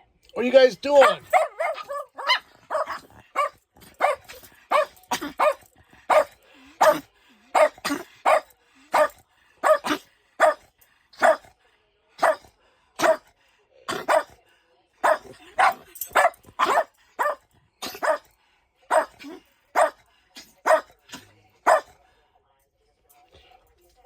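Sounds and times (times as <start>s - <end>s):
dog barking: 1.0s - 11.5s, 12.2s - 13.3s, 13.9s - 14.4s, 15.0s - 18.3s, 18.9s - 22.0s.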